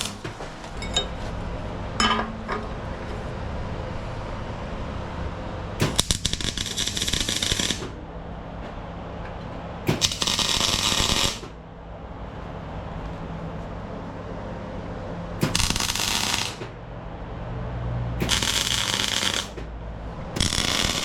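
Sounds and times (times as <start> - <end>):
arc welding crackling: 0.0 - 0.3, 5.8 - 8.0, 9.9 - 11.5, 15.4 - 16.7, 18.2 - 19.7, 20.4 - 21.0
steady low hum: 0.0 - 6.5, 11.5 - 21.0.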